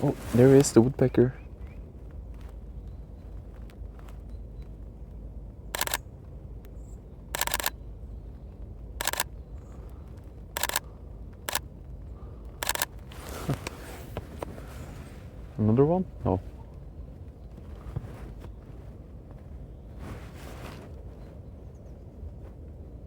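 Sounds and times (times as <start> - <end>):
low outdoor rumble: 0.0 - 23.0
camera shutter bursts: 5.8 - 6.0, 7.4 - 7.8, 9.0 - 9.3, 10.6 - 10.8, 12.6 - 12.9.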